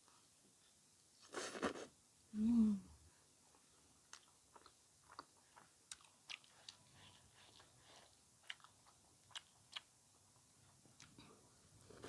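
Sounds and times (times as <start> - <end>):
close-up chewing crunches: 4.1 - 9.9.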